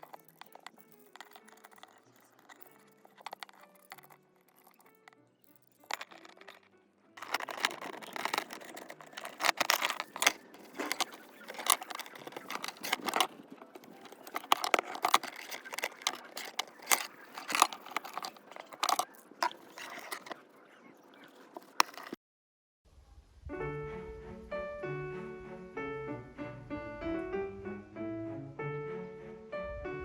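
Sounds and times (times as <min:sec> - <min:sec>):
small metal parts clinking: 0:00.0 - 0:22.2.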